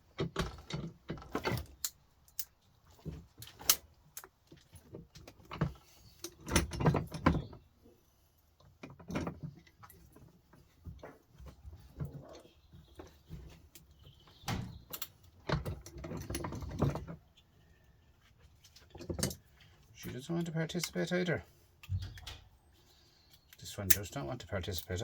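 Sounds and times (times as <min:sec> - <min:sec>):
hand tools clicking and knocking: 0:23.3 - 0:25.0.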